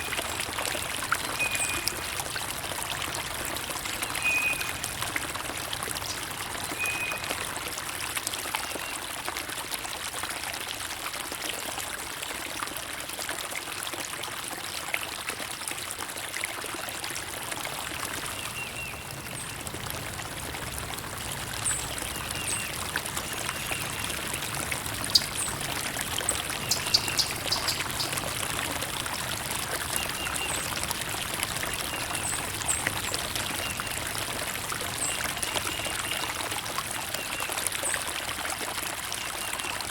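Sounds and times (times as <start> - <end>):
water trickling and pouring: 0.0 - 39.9
high bird chirps: 26.6 - 28.2.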